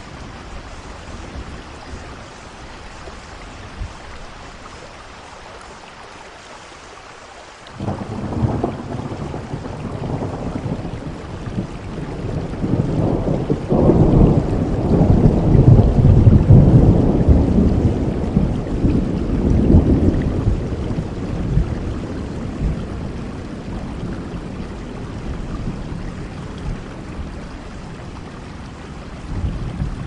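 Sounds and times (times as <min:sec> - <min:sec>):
steady rain: 0:00.0 - 0:30.0
rolling thunder: 0:07.8 - 0:30.0.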